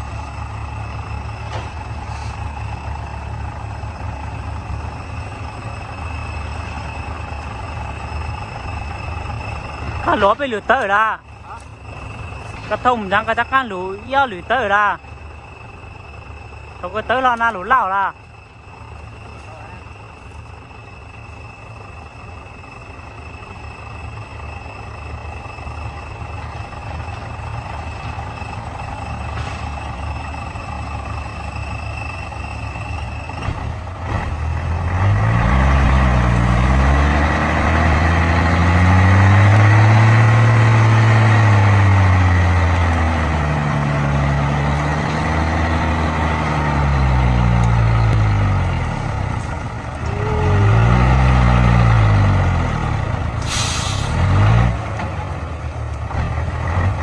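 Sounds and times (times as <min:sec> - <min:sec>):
steady high whine: 0:00.0 - 0:34.0
heavy truck engine revving: 0:00.0 - 0:57.0.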